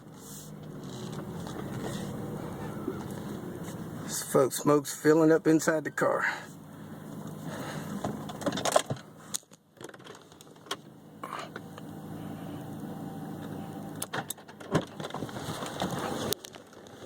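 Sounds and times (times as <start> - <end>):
car engine humming: 0.0 - 17.0
clicks knocks and rattles: 8.0 - 10.8.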